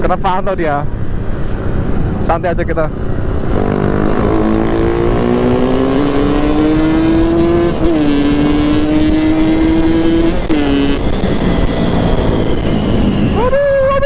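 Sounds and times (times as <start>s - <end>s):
two-stroke motorcycle engine revving: 3.4s - 13.3s.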